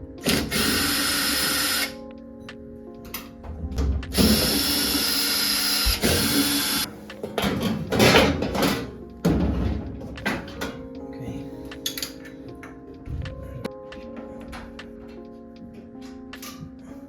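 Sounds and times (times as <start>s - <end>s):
background music: 0.0s - 17.0s
power tool whirring: 0.2s - 2.0s, 4.1s - 6.9s.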